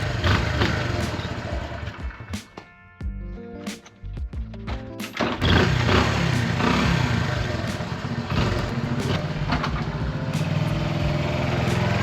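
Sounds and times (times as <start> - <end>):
motorcycle engine idling: 0.0 - 2.2, 5.4 - 12.0.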